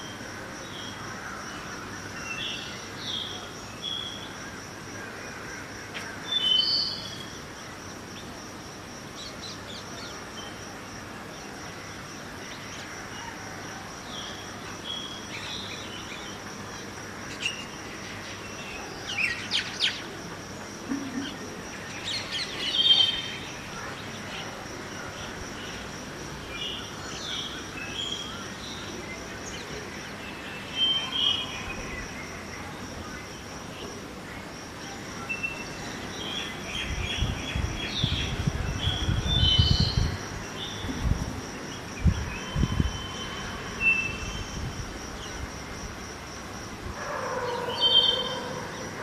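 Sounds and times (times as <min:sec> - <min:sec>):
low city background: 0:00.0 - 0:49.0
wind on the microphone: 0:36.8 - 0:43.1.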